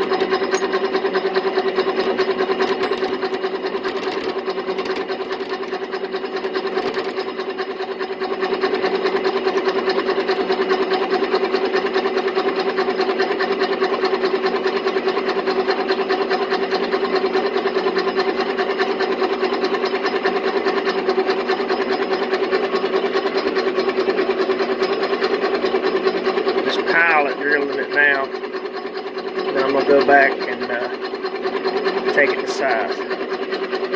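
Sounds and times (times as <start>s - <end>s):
metal lathe running: 0.0s - 5.8s, 6.4s - 7.4s.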